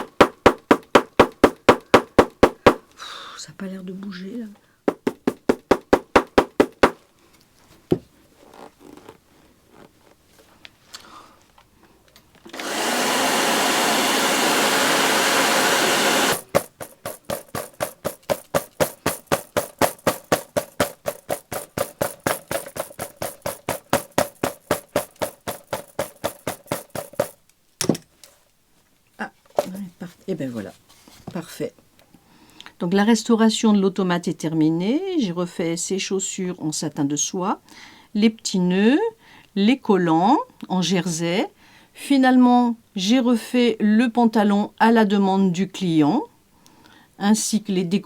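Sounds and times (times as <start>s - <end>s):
hair dryer blowing: 12.5s - 27.3s
rapid regular pulsing: 12.6s - 27.4s.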